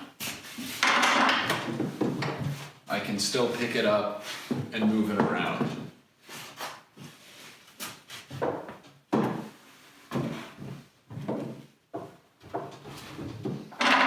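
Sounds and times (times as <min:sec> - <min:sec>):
wooden knocks creaks and scrapes: 0:00.6 - 0:02.7, 0:04.4 - 0:05.9, 0:08.2 - 0:14.0.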